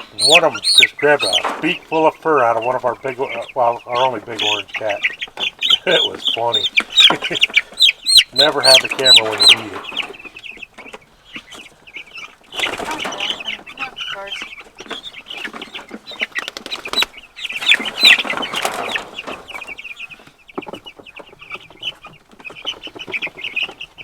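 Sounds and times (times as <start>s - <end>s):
chicks peeping: 0.0s - 24.0s
rustling and scuffling: 0.0s - 24.0s.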